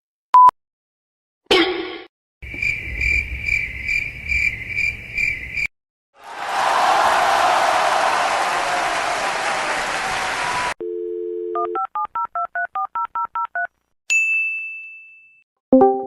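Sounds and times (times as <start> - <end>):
telephone dial tone: 10.8 - 13.7
high ding: 14.1 - 15.4.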